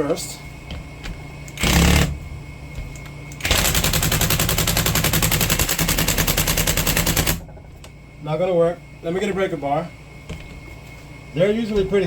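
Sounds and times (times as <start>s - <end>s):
impact wrench hammering: 1.5s - 2.2s, 3.4s - 7.6s.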